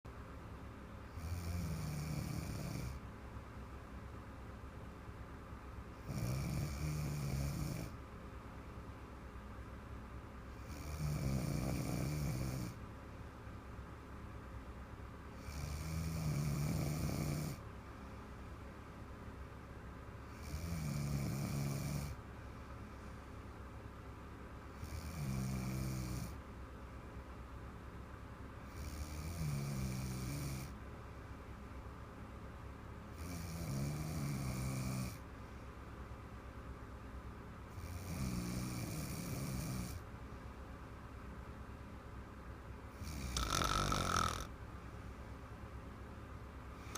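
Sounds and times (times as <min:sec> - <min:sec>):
quiet breathing: 0:01.0 - 0:03.1, 0:15.2 - 0:23.9, 0:24.6 - 0:26.4, 0:33.1 - 0:36.2, 0:46.6 - 0:46.9
woman snoring: 0:01.1 - 0:03.0, 0:06.0 - 0:08.0, 0:10.5 - 0:12.8, 0:15.4 - 0:17.6, 0:20.3 - 0:22.2, 0:24.7 - 0:26.4, 0:28.7 - 0:30.8, 0:33.2 - 0:35.2, 0:37.7 - 0:40.0, 0:43.0 - 0:44.5.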